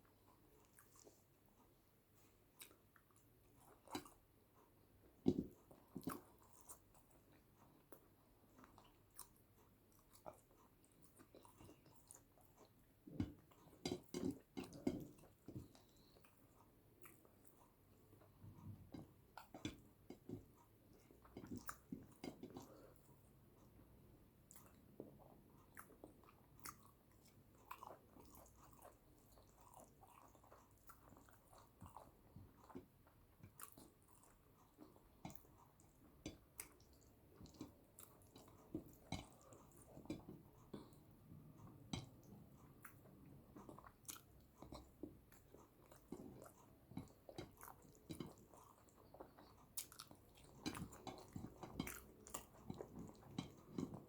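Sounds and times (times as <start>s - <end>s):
chewing and wet mouth sounds: 0.0s - 54.0s.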